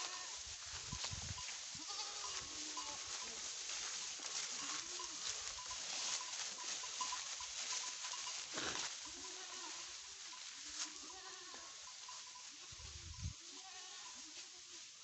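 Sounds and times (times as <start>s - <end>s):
goats bleating: 0.0s - 0.4s, 1.7s - 3.5s, 4.2s - 7.2s, 8.2s - 10.0s, 10.8s - 11.9s, 13.4s - 14.6s.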